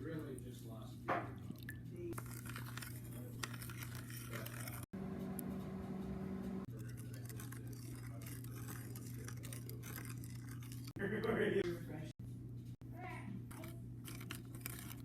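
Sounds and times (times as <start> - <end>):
low electrical hum: 0.0 - 15.0
faint clicks and scrapes: 2.1 - 5.6, 6.6 - 11.0, 13.4 - 15.0.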